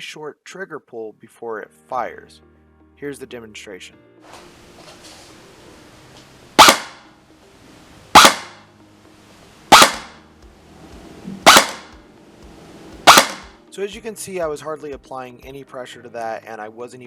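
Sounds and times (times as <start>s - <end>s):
airsoft gun shots: 6.6s - 7.1s, 8.1s - 8.6s, 9.7s - 10.2s, 11.2s - 12.0s, 13.0s - 13.6s.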